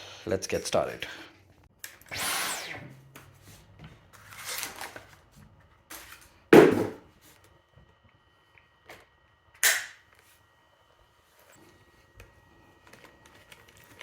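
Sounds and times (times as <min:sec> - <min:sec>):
sharp loud knock: 0:06.6 - 0:07.0.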